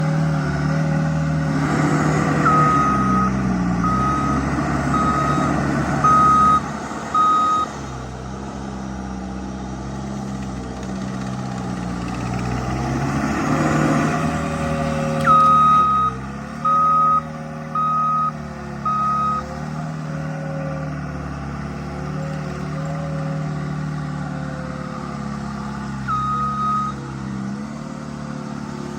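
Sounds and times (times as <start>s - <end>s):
skid steer engine revving: 0.0s - 28.9s
reversing alarm beeps: 2.4s - 7.7s, 15.2s - 19.5s, 26.0s - 27.0s.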